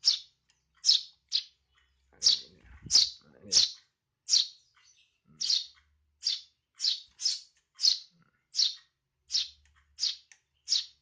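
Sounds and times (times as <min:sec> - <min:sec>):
sparrows chirping: 0:00.0 - 0:11.0.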